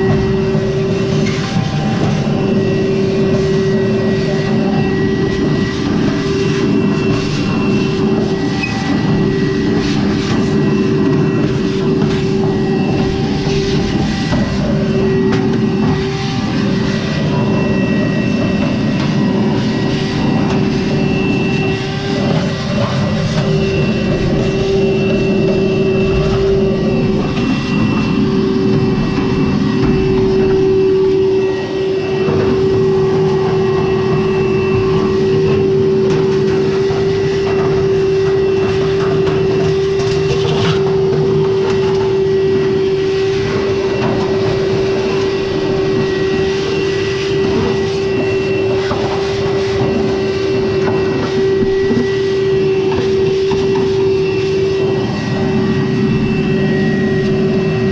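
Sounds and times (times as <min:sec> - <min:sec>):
clothes dryer motor hum: 0:00.0 - 0:57.9
dryer drum rumbling: 0:00.0 - 0:57.9.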